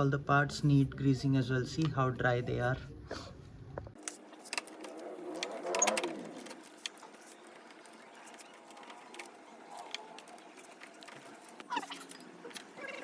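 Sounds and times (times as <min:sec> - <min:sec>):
metal engine parts clicking: 0:04.0 - 0:13.0.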